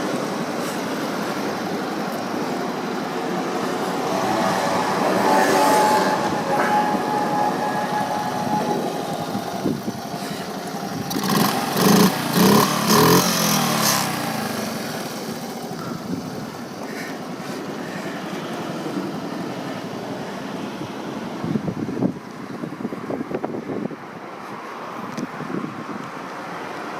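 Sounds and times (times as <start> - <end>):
small motorcycle engine revving: 3.7 - 16.8.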